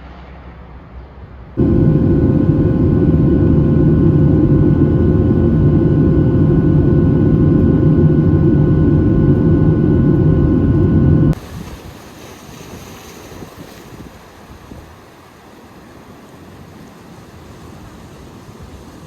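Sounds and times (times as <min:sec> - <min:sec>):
engine drone: 0:01.6 - 0:11.6.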